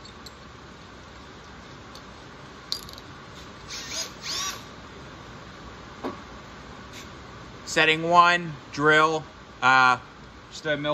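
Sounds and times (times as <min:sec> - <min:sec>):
cordless drill whirring: 0:03.7 - 0:04.7.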